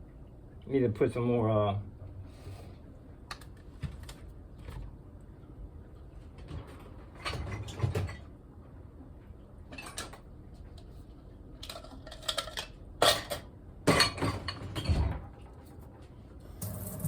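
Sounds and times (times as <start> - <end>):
dishes and pots clattering: 11.7 - 15.3.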